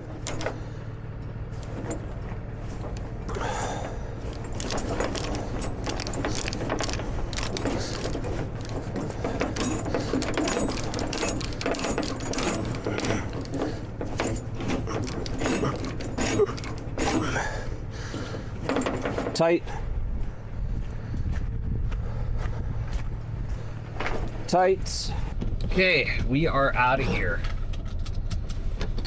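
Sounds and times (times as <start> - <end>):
chain binder metallic clicks: 0.0 - 0.8, 1.6 - 19.8
steel chain clinking: 0.0 - 0.8, 1.6 - 19.9
truck engine idling: 0.0 - 27.6.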